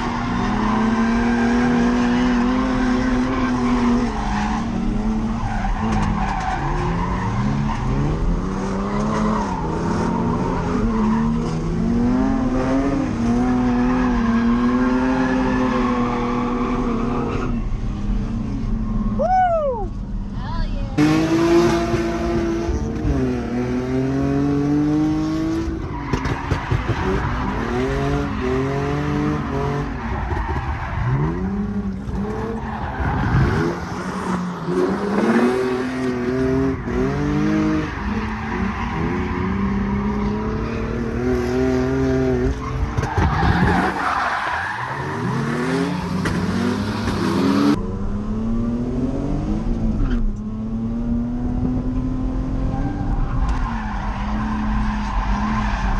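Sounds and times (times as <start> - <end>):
car engine revving hard: 21.0 - 25.8
tyres skidding on wet track: 25.7 - 41.5, 42.3 - 47.8.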